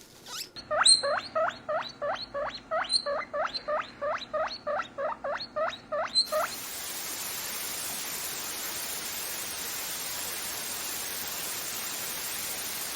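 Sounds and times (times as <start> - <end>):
guinea pig squeaks: 0.2 - 6.7
static hiss: 6.2 - 12.9.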